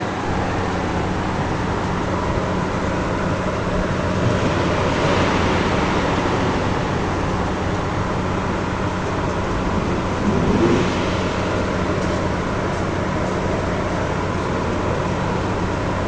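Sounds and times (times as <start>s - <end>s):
engine humming: 0.0s - 16.0s
mechanical whoosh: 9.6s - 12.8s.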